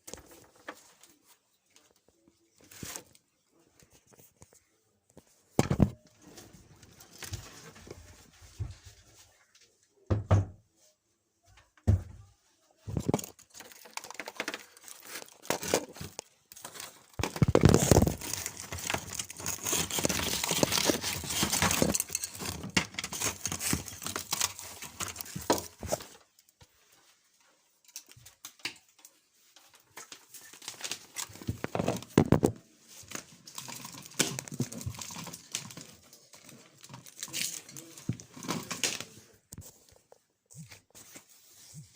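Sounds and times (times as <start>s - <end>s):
rustling and crinkling: 0.0s - 10.0s, 10.7s - 41.9s
knocks and thuds: 10.1s - 10.6s.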